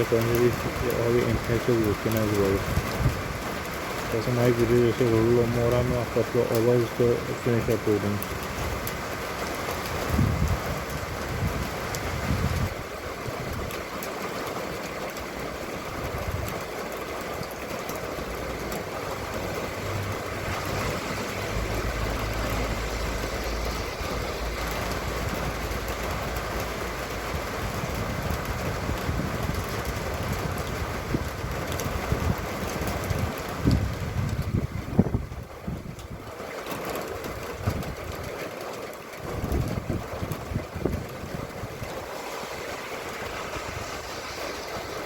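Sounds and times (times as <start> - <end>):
steady rain falling: 0.0 - 45.0
low engine drone: 18.5 - 28.0, 41.9 - 45.0.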